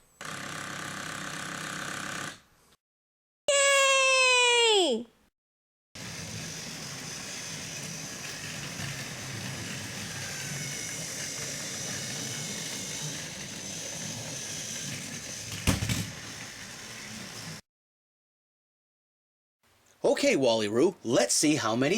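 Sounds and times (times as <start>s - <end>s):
small motor whine: 6.0s - 17.6s
toy train wheels rattling: 6.2s - 17.6s.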